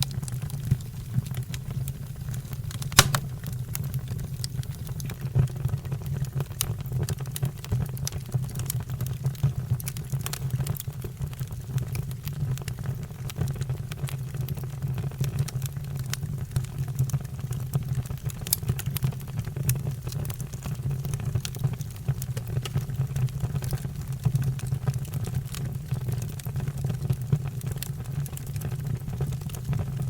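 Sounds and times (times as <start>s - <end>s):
fire crackling and popping: 0.1s - 5.2s.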